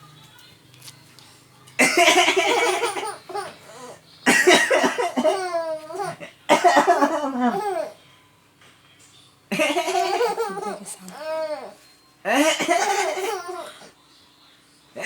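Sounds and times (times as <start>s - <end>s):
baby laughing: 2.0s - 6.3s, 6.9s - 8.0s, 9.5s - 13.8s
man coughing: 4.3s - 5.4s, 6.2s - 7.5s.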